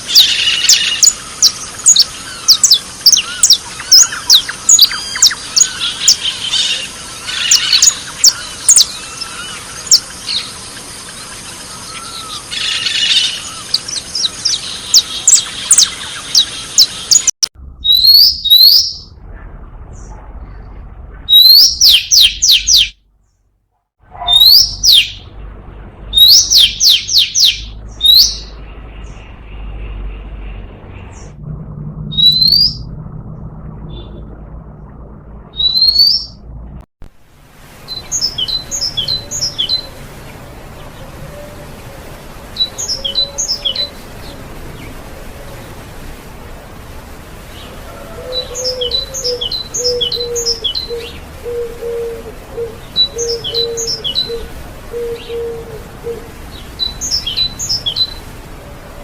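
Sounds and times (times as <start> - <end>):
small birds chirping: 0.0 - 19.2, 19.9 - 23.0, 24.1 - 25.4, 26.1 - 30.0, 47.4 - 58.3
steady hiss: 37.1 - 59.0.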